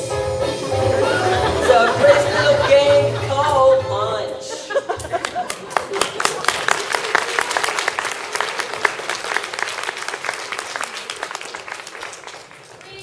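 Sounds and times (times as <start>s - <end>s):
audience applauding: 5.0s - 13.0s.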